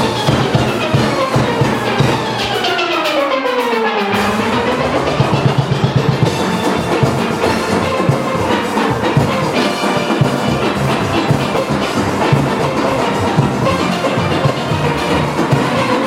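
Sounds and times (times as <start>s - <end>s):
steel band playing: 0.0s - 16.0s
bass hits: 4.2s - 9.6s.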